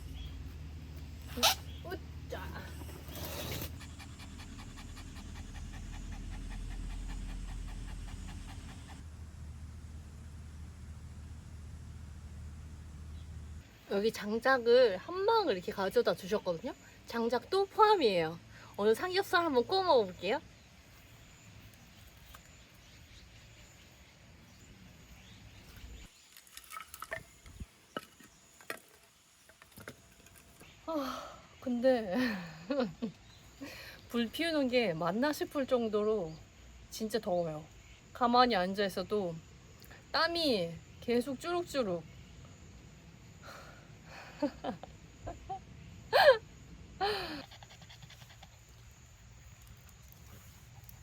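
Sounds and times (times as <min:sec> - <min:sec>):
insects chirping: 0:00.0 - 0:51.0
dog panting: 0:03.6 - 0:09.1, 0:47.3 - 0:51.0.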